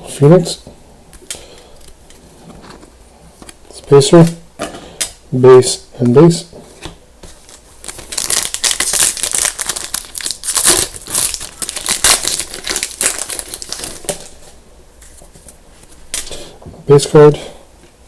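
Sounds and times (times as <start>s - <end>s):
foil wrapper crinkling: 7.4s - 14.6s.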